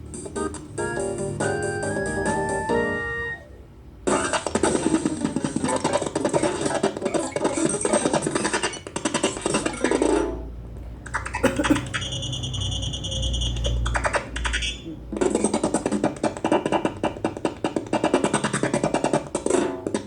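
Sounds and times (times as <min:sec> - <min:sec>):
midi ringtone melody: 0:11.8 - 0:13.8.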